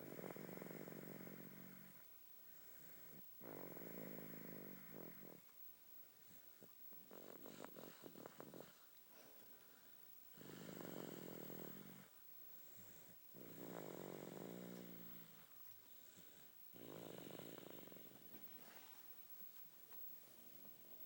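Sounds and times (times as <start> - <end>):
snoring: 0.0 - 5.5, 6.9 - 8.9, 10.3 - 18.7.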